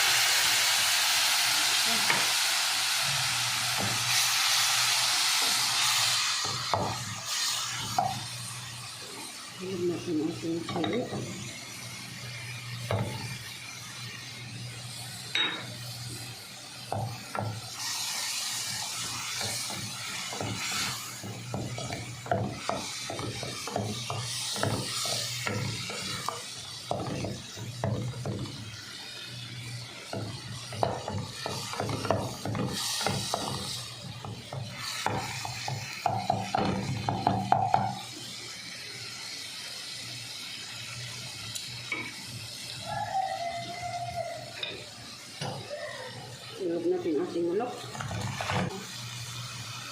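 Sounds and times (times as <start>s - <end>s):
chicken sizzling: 0.0s - 49.9s
spatula scraping in a pan: 17.0s - 29.0s, 29.6s - 37.0s, 47.8s - 49.0s.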